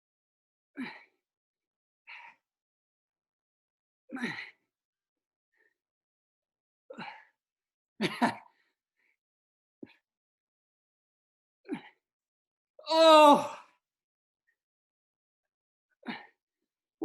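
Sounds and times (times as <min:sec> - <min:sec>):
person grunting with effort: 0:12.9 - 0:13.6.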